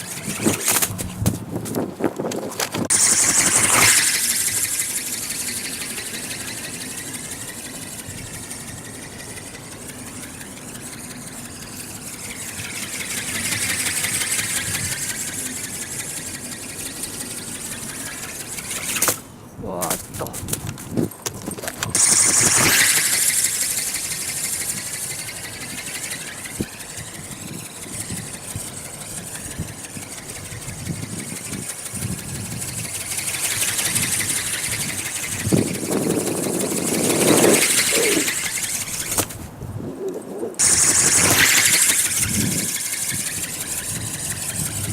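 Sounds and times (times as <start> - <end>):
electric motor whining: 0.0 - 19.2, 21.8 - 44.9.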